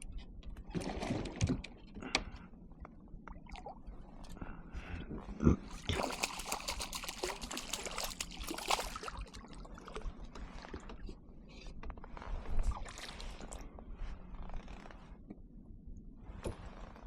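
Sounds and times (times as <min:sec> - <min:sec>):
water splashing and trickling: 0:05.7 - 0:10.1.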